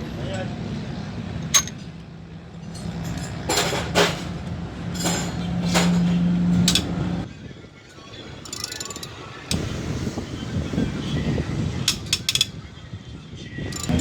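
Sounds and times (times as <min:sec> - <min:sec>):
metal tools clinking and knocking: 0:01.4 - 0:02.0, 0:02.6 - 0:06.9, 0:08.4 - 0:09.2, 0:13.7 - 0:14.0.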